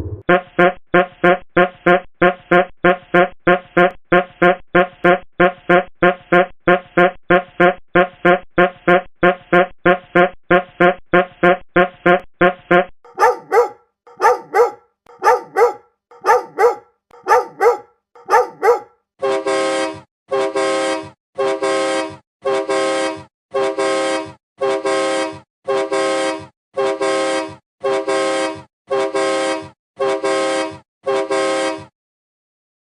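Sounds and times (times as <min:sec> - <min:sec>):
horn honks: 0:00.0 - 0:31.9
dog-like double barks: 0:13.1 - 0:18.9.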